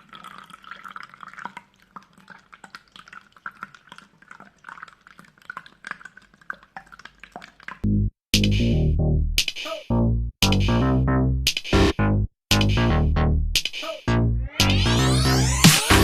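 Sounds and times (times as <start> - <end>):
water dripping and splashing: 0.0 - 7.9
loud electronic music: 11.7 - 16.0.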